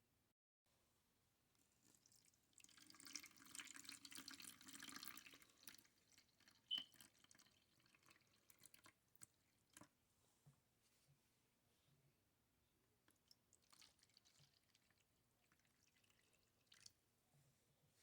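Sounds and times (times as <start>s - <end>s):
faint liquid splashing: 1.6s - 10.0s, 13.0s - 17.2s.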